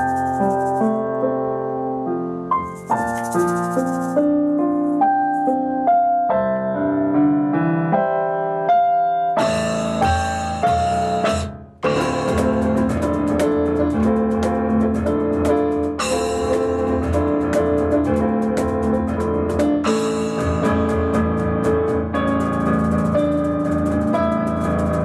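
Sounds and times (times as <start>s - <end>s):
fast driving percussion: 0.0s - 0.9s, 2.6s - 4.3s, 9.4s - 25.0s
piano playing: 0.0s - 25.0s.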